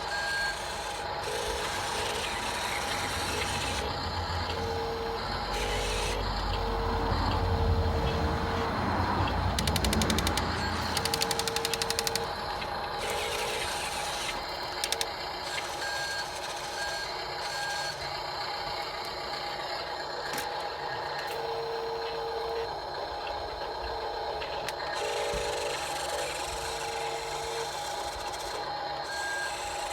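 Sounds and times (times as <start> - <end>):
electric motors whirring: 0.0 - 29.9
rapid clicking: 9.2 - 15.2.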